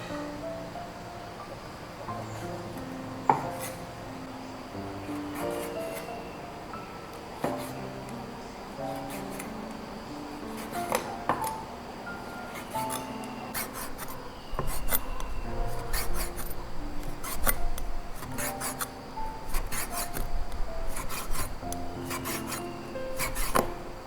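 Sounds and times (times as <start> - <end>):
soft background music: 0.0 - 24.0
rasping scraping strokes: 20.9 - 23.7.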